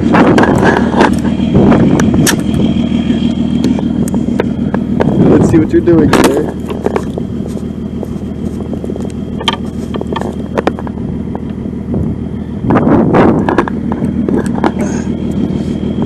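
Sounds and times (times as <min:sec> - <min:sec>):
loud clatter: 0:00.0 - 0:11.5
vehicle engine idling: 0:00.0 - 0:16.0.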